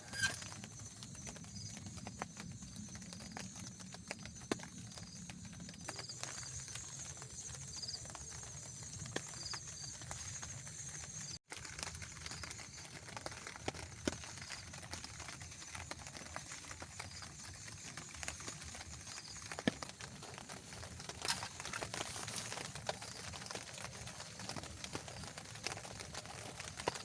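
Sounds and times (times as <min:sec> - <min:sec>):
rain drops tapping: 0:00.0 - 0:27.0
steady wet hiss: 0:05.0 - 0:11.4.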